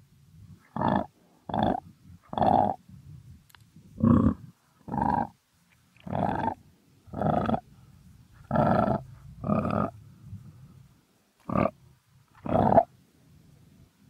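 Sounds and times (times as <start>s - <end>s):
crocodile grunting: 0.7s - 2.8s, 4.0s - 5.3s, 6.0s - 7.7s, 8.5s - 10.0s, 11.4s - 11.8s, 12.4s - 12.9s.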